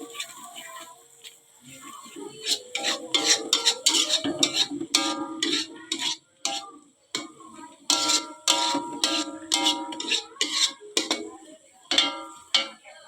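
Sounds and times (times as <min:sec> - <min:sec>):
spatula scraping a frying pan: 0:02.2 - 0:13.0
spatula clinks: 0:02.4 - 0:06.6, 0:07.9 - 0:11.3.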